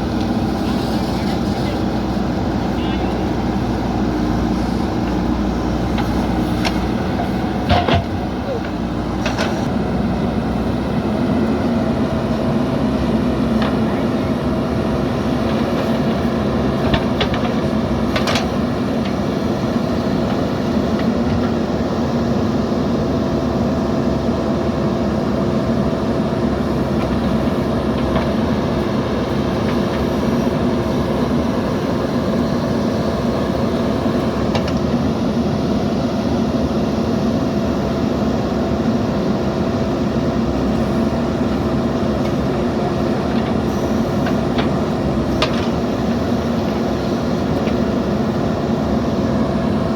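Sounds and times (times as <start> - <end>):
backhoe diesel engine running: 0.0 - 49.9.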